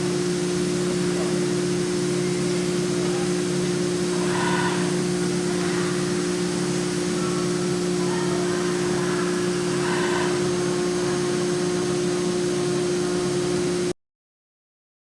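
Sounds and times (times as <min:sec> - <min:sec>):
machine noise: 0:00.0 - 0:13.9
spindle whine: 0:00.0 - 0:13.9.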